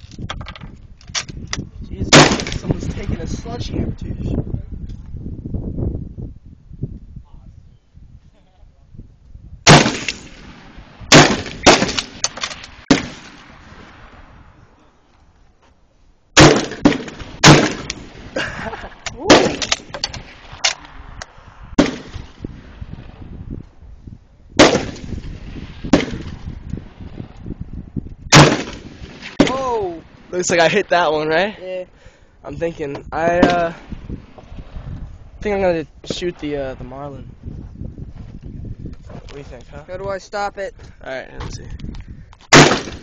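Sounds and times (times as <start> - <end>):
rifle gunshots: 2.1 - 3.0, 9.6 - 14.3, 16.4 - 18.4, 19.2 - 20.8, 21.8 - 23.2, 24.6 - 26.4, 28.3 - 29.6, 42.5 - 43.0.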